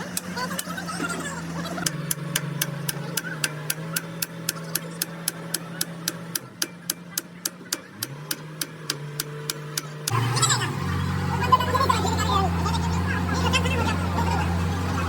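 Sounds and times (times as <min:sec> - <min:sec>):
sharp ticking: 0:00.0 - 0:10.8
machine humming: 0:00.0 - 0:15.0.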